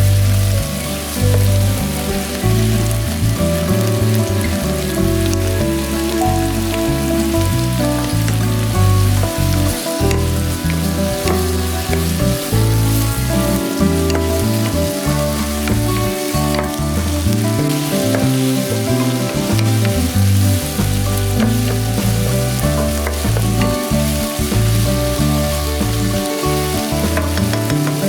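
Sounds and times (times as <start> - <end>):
background music with bass: 0.0 - 28.0
food sizzling in hot oil: 0.0 - 28.0.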